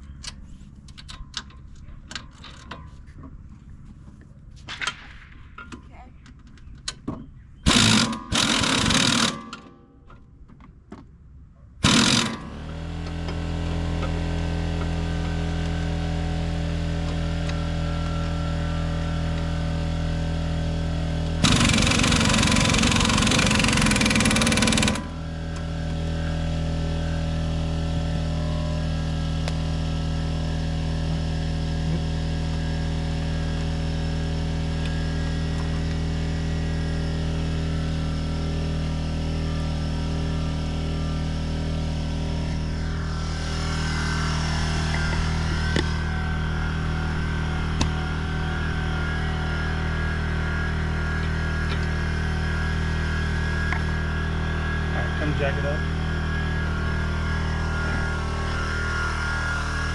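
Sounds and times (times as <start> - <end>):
power tool bursts: 7.6 - 9.7, 11.8 - 15.0, 21.4 - 25.3, 41.1 - 59.9
steady machine drone: 7.7 - 9.8, 11.8 - 59.9.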